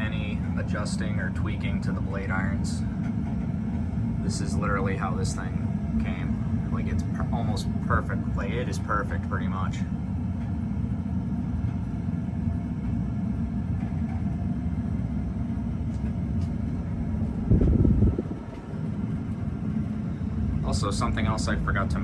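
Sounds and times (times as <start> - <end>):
ceiling fan running: 0.0 - 22.0.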